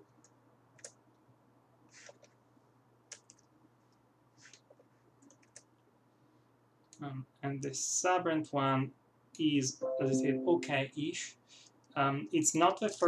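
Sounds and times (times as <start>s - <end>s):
computer mouse clicks: 0.0s - 1.0s, 3.1s - 3.5s, 4.5s - 5.8s
low steady hum: 9.4s - 11.2s.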